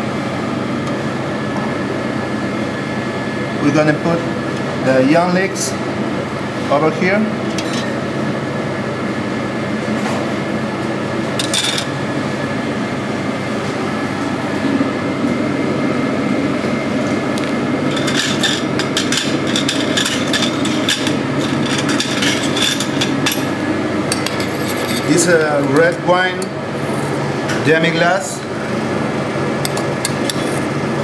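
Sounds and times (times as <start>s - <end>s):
kitchen ventilation drone: 0.0s - 31.0s
taps and clicks of kitchen work: 29.6s - 30.4s.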